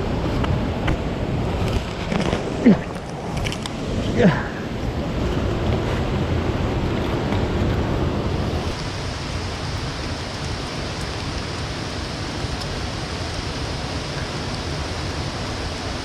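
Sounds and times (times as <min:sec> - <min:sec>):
rain falling: 0:00.0 - 0:16.0
river water rushing: 0:00.0 - 0:16.0.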